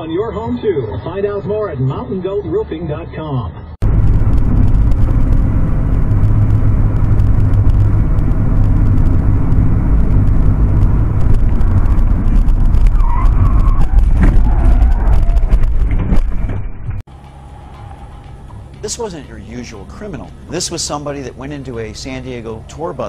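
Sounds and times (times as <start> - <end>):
vehicle engine and road rumble: 0.0 - 23.0
high wavering sound: 17.1 - 21.3.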